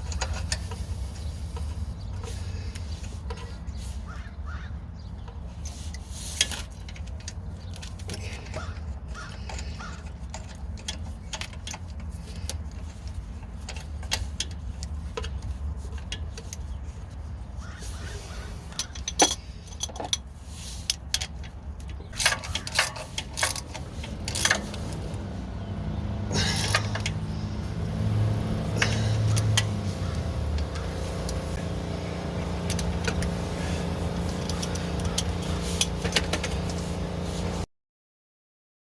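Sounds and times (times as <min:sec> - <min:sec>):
engine running: 0:00.0 - 0:04.1, 0:21.3 - 0:37.7.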